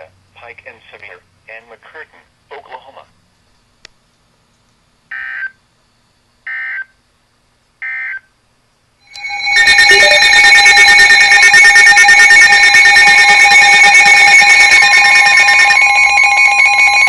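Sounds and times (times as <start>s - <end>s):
continuous electronic alert tone: 9.1s - 17.0s
warbling data tone bursts: 9.1s - 17.0s.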